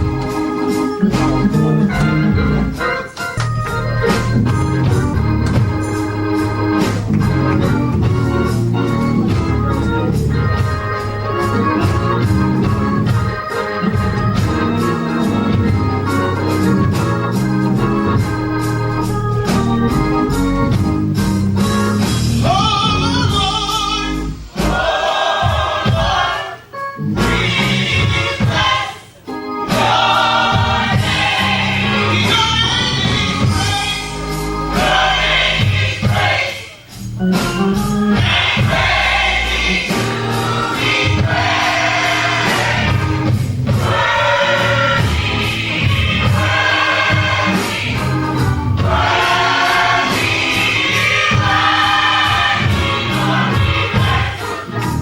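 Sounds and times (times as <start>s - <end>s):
choir singing: 0.0s - 3.1s, 22.5s - 36.9s, 37.8s - 55.0s
gospel organ and band playing: 0.0s - 55.0s.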